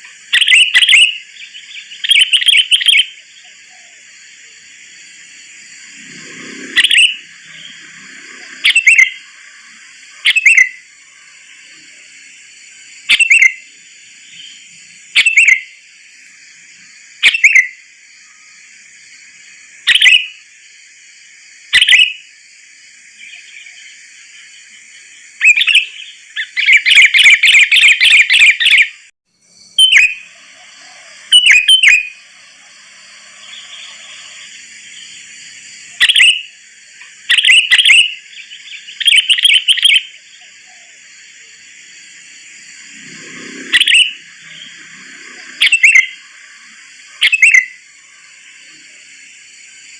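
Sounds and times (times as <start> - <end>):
bulbul bird calls: 0.0 - 4.1, 6.6 - 11.6, 13.1 - 13.7, 21.8 - 22.2, 25.4 - 29.1, 29.8 - 32.2, 35.9 - 41.1, 43.6 - 44.8, 45.4 - 46.2, 47.1 - 47.8.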